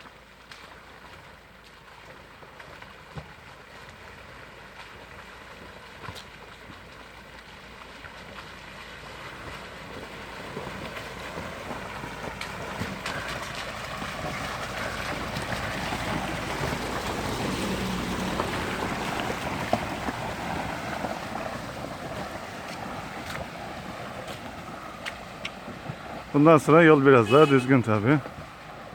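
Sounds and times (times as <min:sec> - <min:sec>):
vehicle driving over rocks: 0:09.5 - 0:26.8.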